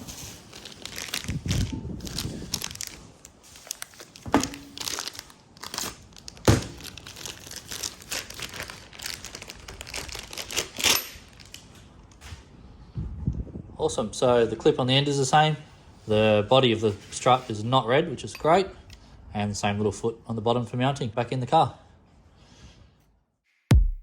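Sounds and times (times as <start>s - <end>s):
plastic packaging crinkling and tearing: 0.0s - 11.9s.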